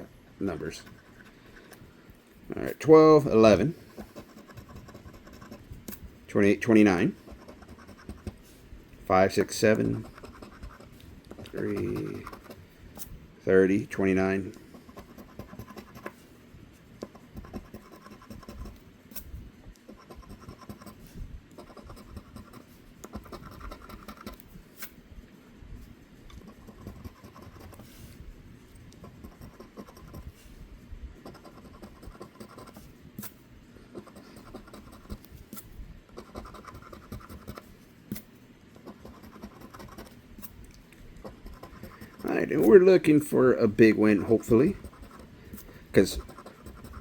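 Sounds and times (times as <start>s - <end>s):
lottery ticket scratching: 9.1s - 12.6s, 41.3s - 45.3s, 45.9s - 47.0s.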